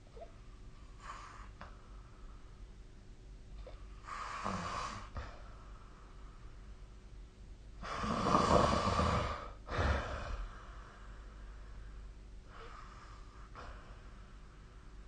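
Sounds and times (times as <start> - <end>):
person snoring: 4.1 - 5.1, 7.8 - 10.6.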